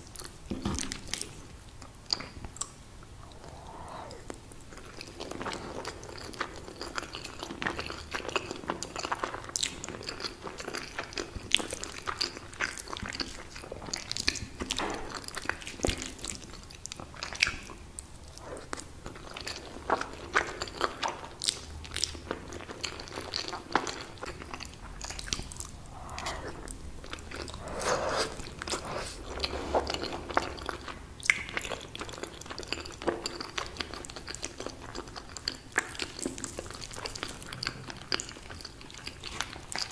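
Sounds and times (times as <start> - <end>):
chewing: 0.2 - 14.5, 15.1 - 39.9
wet squelchy eating: 23.8 - 34.8.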